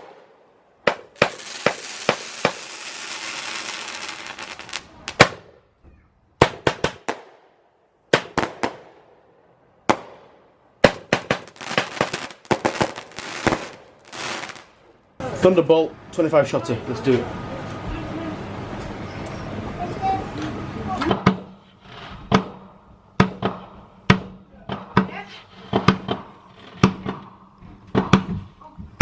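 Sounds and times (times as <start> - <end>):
firework bangs: 0.0 - 5.6, 6.4 - 7.4, 8.1 - 9.2, 9.9 - 15.0
firework crackling hiss: 0.9 - 5.3, 10.9 - 14.8.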